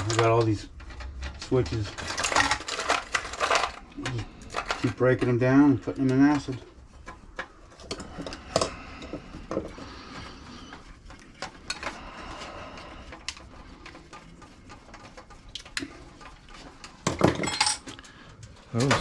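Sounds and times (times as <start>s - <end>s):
clicks and clinks of scrap parts: 0.0s - 5.4s, 16.9s - 18.1s.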